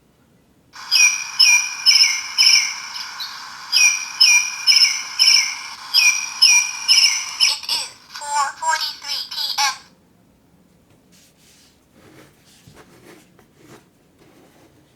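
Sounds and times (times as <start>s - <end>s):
alarm clock high chirps: 0.8s - 9.9s.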